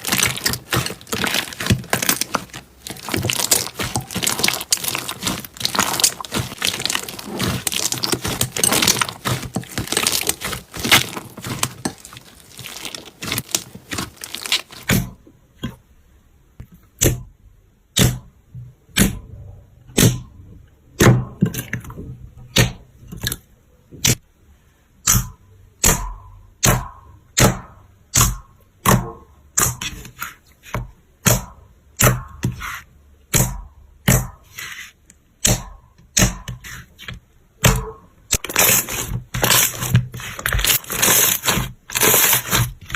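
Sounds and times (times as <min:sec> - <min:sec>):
slime crackling: 0:00.0 - 0:15.2, 0:38.3 - 0:42.9.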